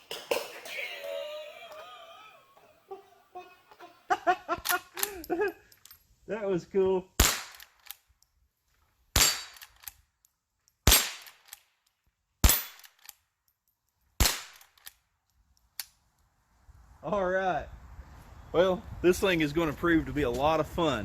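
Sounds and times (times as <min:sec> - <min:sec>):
rifle shots: 0:07.2 - 0:07.9, 0:09.2 - 0:09.9, 0:10.8 - 0:11.6, 0:12.4 - 0:13.0, 0:14.2 - 0:14.7.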